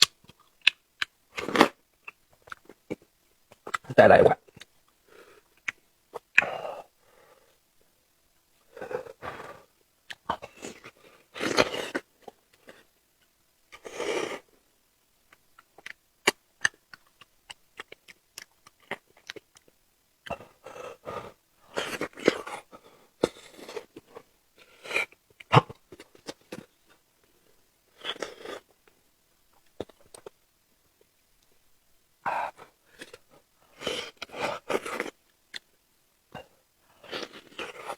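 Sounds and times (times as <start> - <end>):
mouth clicks and crunches: 0.0 - 4.8, 5.5 - 6.6, 10.1 - 12.8, 15.3 - 20.6, 29.6 - 30.4
person chewing and eating: 15.3 - 26.8, 27.9 - 28.7, 32.3 - 35.7, 36.4 - 37.9.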